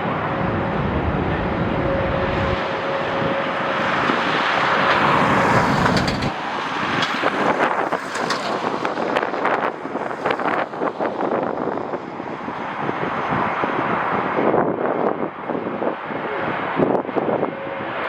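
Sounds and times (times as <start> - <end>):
jet engines running: 0.0 - 12.4
wind gusts on microphone: 0.0 - 18.0.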